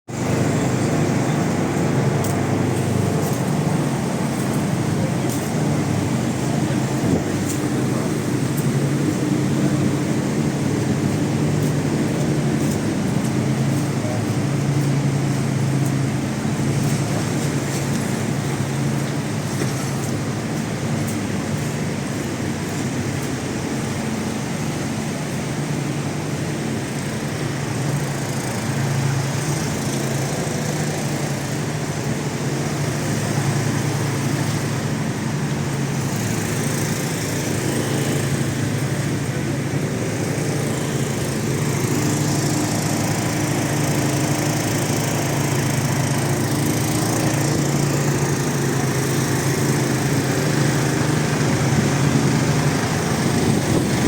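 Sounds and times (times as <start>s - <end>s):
generators droning: 0.1s - 54.0s.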